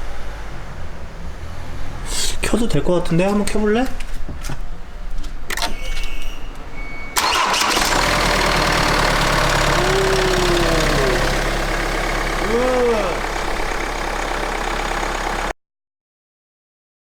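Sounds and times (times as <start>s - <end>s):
car engine starting and idling: 7.2s - 15.6s.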